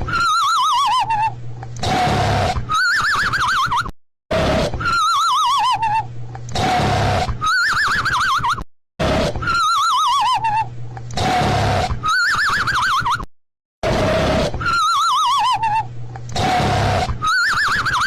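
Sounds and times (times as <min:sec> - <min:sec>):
cartoon snore with whistle: 0:01.8 - 0:03.6, 0:06.5 - 0:08.0, 0:11.2 - 0:12.9, 0:13.8 - 0:18.0.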